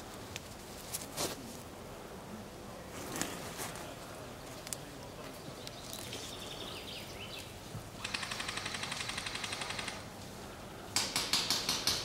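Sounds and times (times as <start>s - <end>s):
airsoft gun firing: 8.0s - 10.0s.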